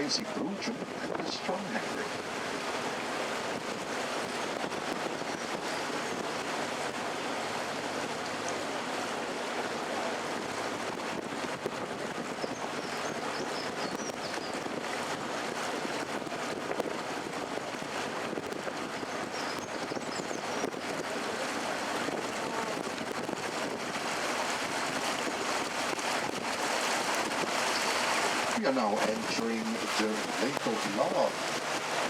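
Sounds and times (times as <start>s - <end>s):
water washing along a hull: 0.0s - 32.0s
wind on the microphone: 0.0s - 32.0s.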